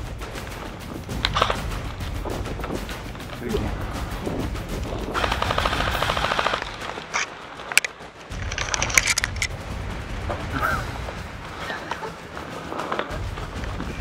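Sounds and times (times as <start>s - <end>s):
airsoft gun full-auto burst: 5.1s - 9.5s.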